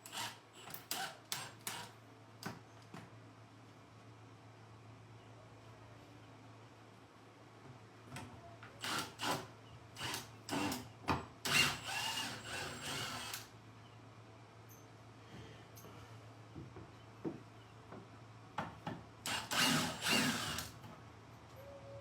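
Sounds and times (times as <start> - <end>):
power drill bursts: 0.0 - 1.9, 8.8 - 10.8, 11.5 - 13.5, 19.3 - 20.8.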